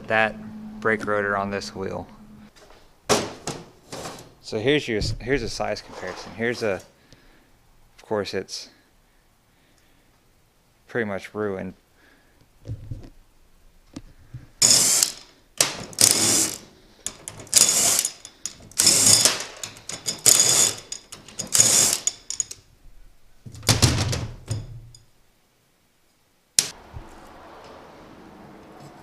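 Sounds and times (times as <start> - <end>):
ratchet wrench clicking: 14.6 - 15.3, 16.0 - 22.6.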